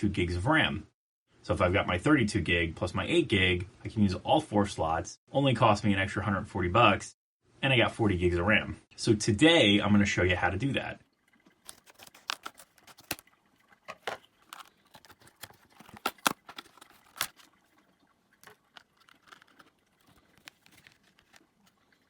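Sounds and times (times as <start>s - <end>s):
small objects clicking and rustling: 11.7s - 13.2s, 13.9s - 17.7s, 18.4s - 21.9s.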